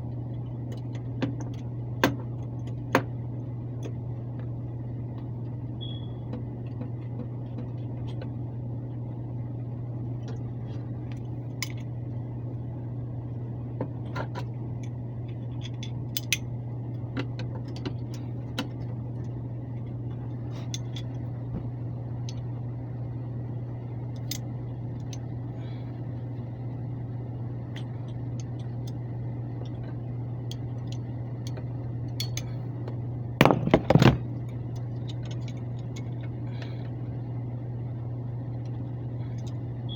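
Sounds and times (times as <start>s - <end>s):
blower humming: 0.0s - 39.9s
tools and metal parts clinking: 14.1s - 16.5s, 20.5s - 21.2s, 29.6s - 32.6s, 33.4s - 36.4s.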